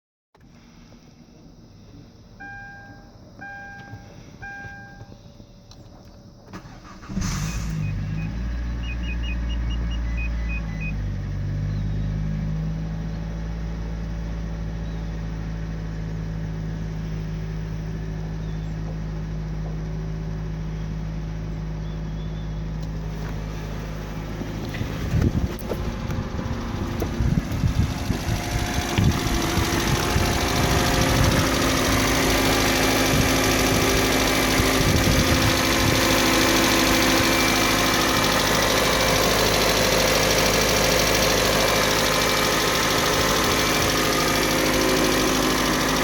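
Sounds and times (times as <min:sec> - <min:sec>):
car engine cranking and idling: 0:00.4 - 0:46.0
dashboard chime beeping: 0:02.4 - 0:05.1.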